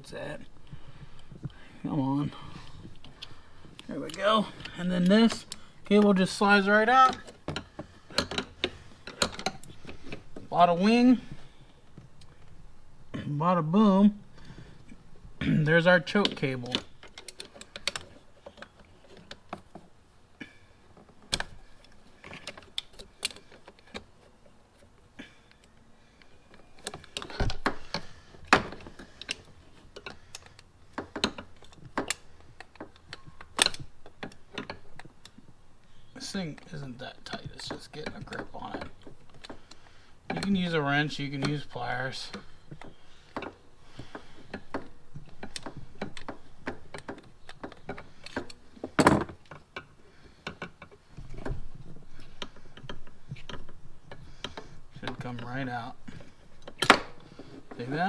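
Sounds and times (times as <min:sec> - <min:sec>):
clicks and knocks of tools: 0:07.0 - 0:10.5, 0:16.1 - 0:19.9, 0:20.9 - 0:58.0.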